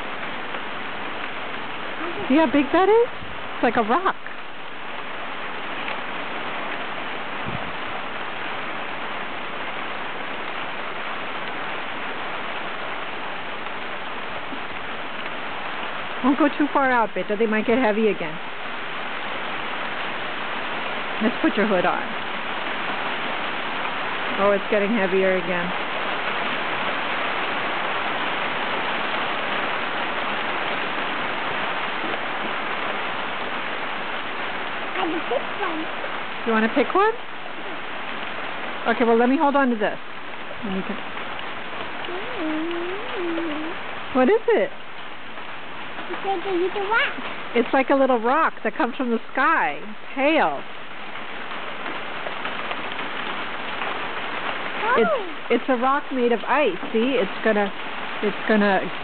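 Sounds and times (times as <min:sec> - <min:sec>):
hail pattering on grass: 0:00.0 - 0:59.0.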